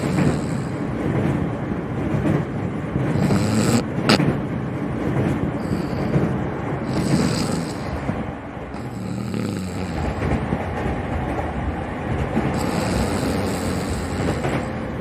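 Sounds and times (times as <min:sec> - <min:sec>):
woman snoring: 0:00.0 - 0:00.8, 0:03.1 - 0:03.9, 0:05.6 - 0:06.2, 0:06.8 - 0:08.0, 0:08.8 - 0:10.4, 0:12.5 - 0:14.8
train carriage rumble: 0:00.0 - 0:15.0.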